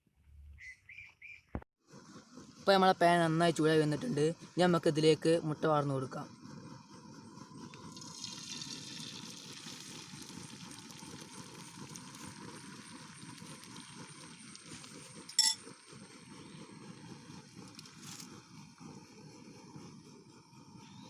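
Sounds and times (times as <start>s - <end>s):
omelette sizzling in oil: 7.8s - 15.8s
sharp metallic clink: 15.3s - 15.6s.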